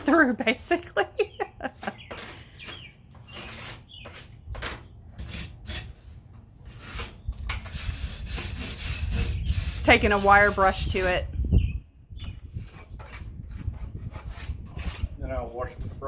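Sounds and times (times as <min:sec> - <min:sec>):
hand tool rasping over stone: 0:01.8 - 0:04.4, 0:05.2 - 0:11.2, 0:12.5 - 0:15.1.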